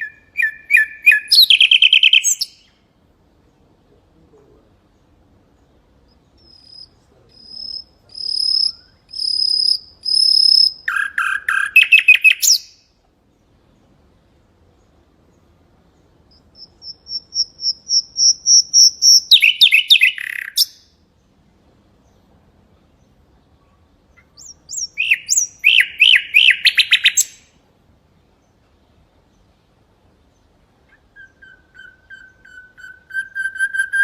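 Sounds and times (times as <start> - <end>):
bird whistling song: 0.0 - 2.8, 6.2 - 12.9, 16.3 - 20.9, 24.1 - 27.5, 30.8 - 34.0.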